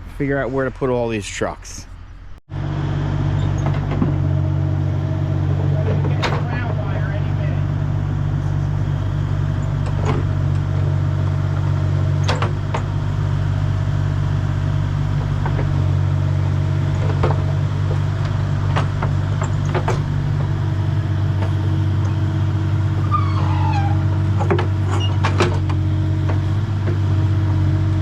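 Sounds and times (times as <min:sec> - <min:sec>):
truck engine idling: 0:00.0 - 0:28.0
scattered clicks and knocks: 0:16.9 - 0:20.5, 0:24.4 - 0:27.1.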